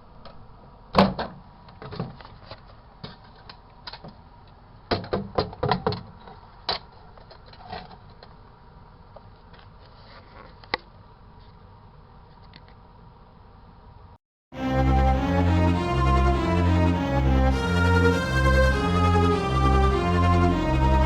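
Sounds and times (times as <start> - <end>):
low steady background: 14.6 - 21.0.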